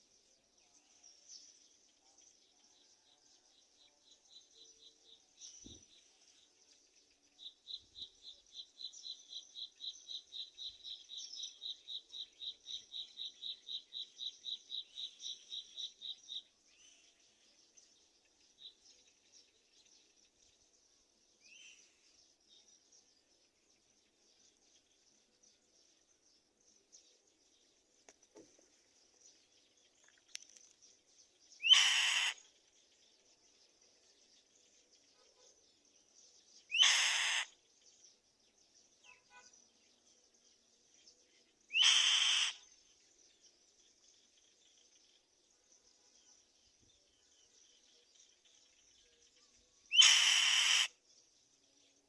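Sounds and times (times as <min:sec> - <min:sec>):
faint ticks: 0:29.9 - 0:30.9
bird rasping screech: 0:31.7 - 0:32.4, 0:36.8 - 0:37.5, 0:41.8 - 0:42.6, 0:49.9 - 0:50.9.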